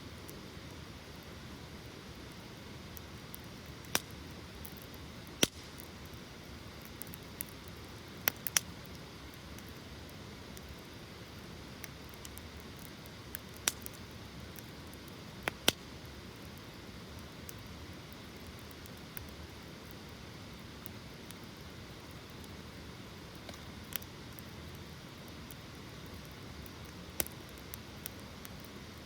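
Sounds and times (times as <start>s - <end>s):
low rush of flames: 0.0s - 29.0s
wood crackling and popping: 0.1s - 29.0s.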